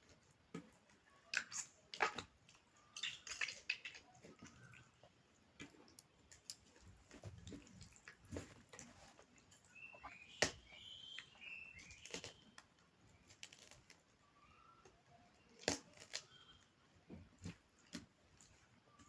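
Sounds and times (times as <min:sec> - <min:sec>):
chewing and smacking: 0:00.6 - 0:10.6, 0:11.2 - 0:14.0
faint birdsong chirps: 0:02.5 - 0:19.0.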